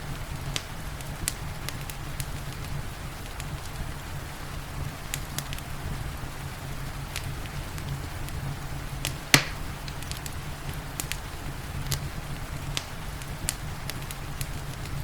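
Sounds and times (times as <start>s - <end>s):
rain hissing: 0.0s - 15.0s
wood fire crackling: 0.0s - 15.0s.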